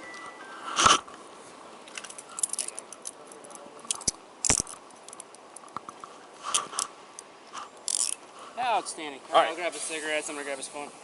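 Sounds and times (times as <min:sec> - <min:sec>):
handcuffs rattling and clicking: 0:01.9 - 0:05.7, 0:07.8 - 0:08.2.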